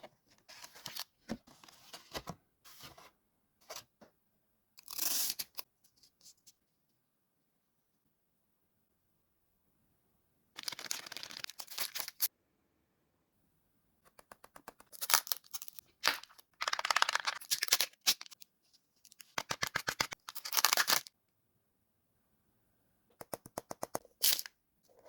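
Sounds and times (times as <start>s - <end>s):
packaging tearing and crinkling: 10.6s - 12.3s, 15.0s - 18.4s, 19.4s - 21.1s.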